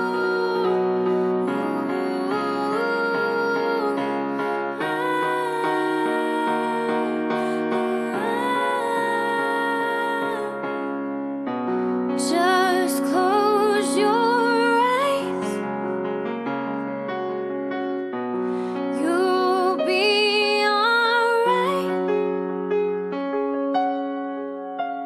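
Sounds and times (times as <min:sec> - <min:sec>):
woman singing ballad: 0:00.0 - 0:11.0, 0:12.1 - 0:15.7, 0:18.5 - 0:22.3
piano chords: 0:00.0 - 0:25.0.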